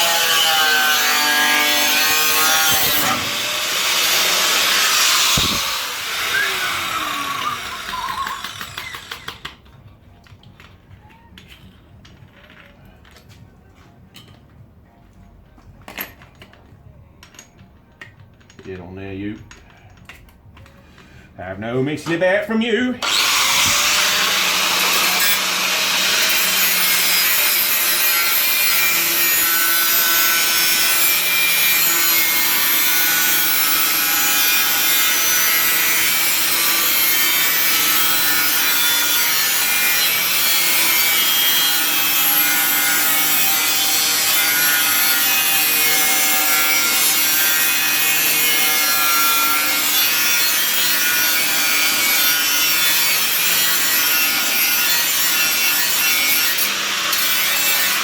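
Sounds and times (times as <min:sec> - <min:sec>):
power tool cutting sheet steel: 0:00.0 - 0:09.6, 0:23.0 - 0:58.0.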